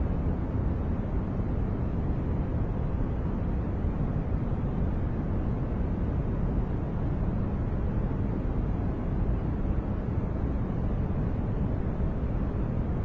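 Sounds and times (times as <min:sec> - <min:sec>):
deep muffled white noise: 0:00.0 - 0:13.0.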